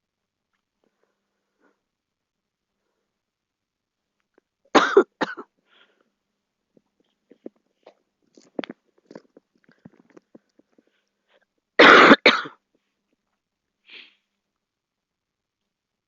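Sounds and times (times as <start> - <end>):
girl coughing: 4.8 - 5.5, 11.8 - 12.6.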